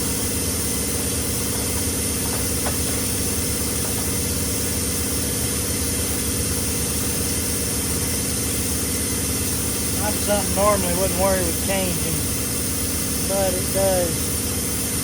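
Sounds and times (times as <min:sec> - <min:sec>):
machine humming: 0:00.0 - 0:15.0.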